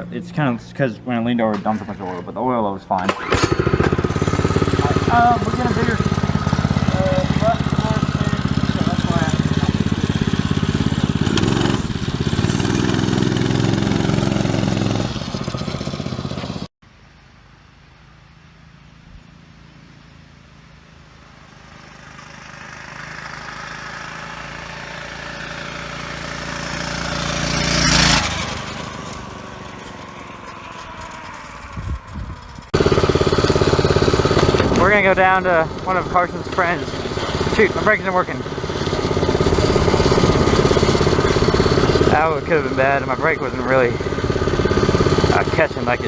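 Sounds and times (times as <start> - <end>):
small engine running: 3.0 - 16.7, 19.3 - 46.0.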